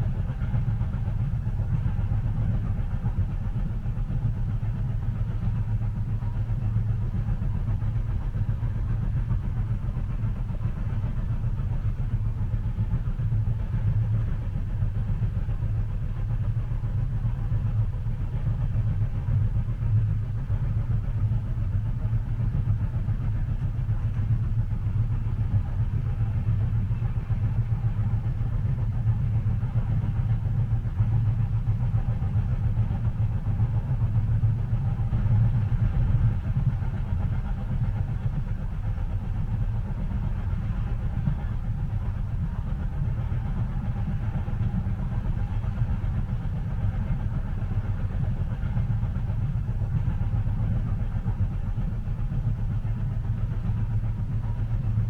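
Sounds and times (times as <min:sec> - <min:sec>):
train rumbling inside cabin: 0:00.0 - 0:55.0.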